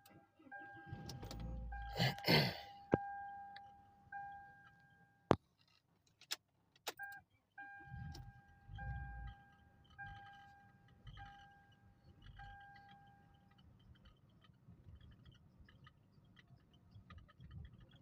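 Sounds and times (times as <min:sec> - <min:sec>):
car warning chime beeping: 0:00.0 - 0:05.3, 0:06.9 - 0:13.4
low rumble: 0:00.8 - 0:02.1.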